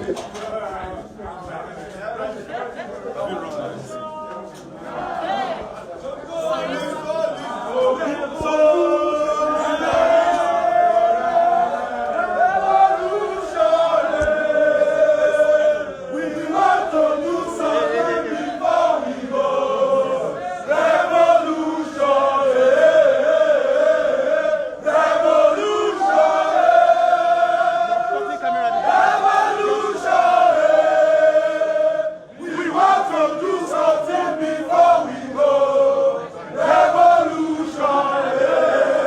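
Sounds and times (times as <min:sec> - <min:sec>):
crowd chanting in unison: 0:03.3 - 0:39.0.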